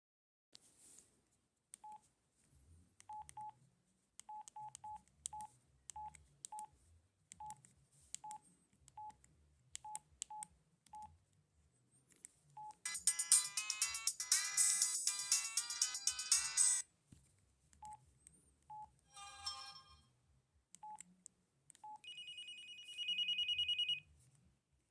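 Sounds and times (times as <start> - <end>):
phone ringtone: 12.9 - 16.8, 19.1 - 20.0, 22.0 - 24.0
phone keypad beeps: 21.8 - 24.0.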